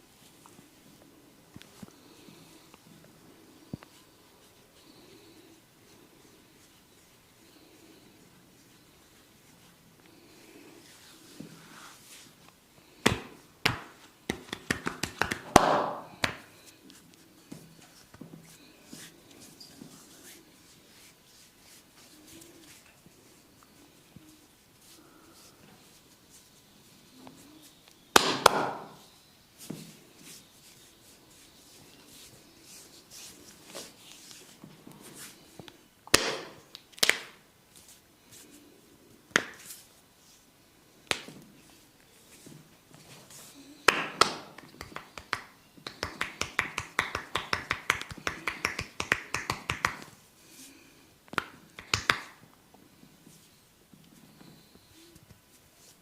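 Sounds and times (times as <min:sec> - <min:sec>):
hands slapping and tapping head: 0:13.0 - 0:18.3, 0:28.1 - 0:29.0, 0:36.0 - 0:37.4, 0:39.3 - 0:39.8, 0:41.0 - 0:41.5, 0:43.8 - 0:50.2, 0:51.3 - 0:52.4.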